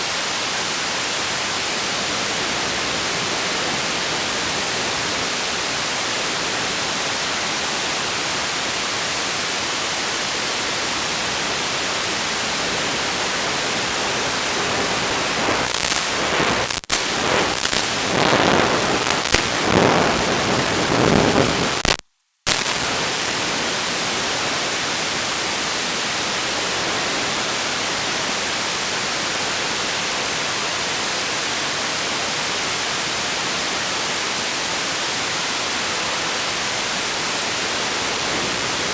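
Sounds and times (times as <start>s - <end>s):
white-noise static hiss: 0.0s - 38.9s.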